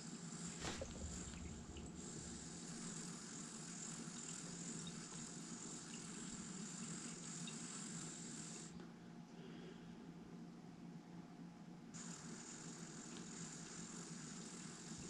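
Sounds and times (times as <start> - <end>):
air hissing through device: 0.3 - 5.0.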